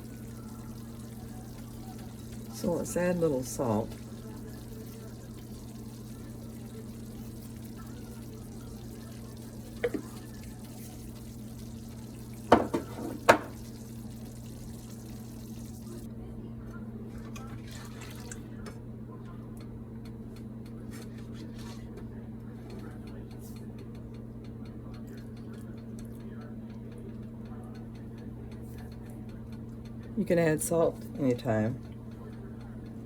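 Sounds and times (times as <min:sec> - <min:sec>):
steady low hum: 0:00.0 - 0:16.6
utensil knocking on pan: 0:09.8 - 0:10.2, 0:12.5 - 0:13.7.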